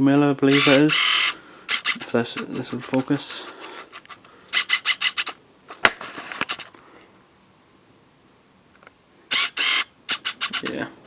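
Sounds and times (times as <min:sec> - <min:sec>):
handling scrapes and clicks: 0:01.7 - 0:06.8.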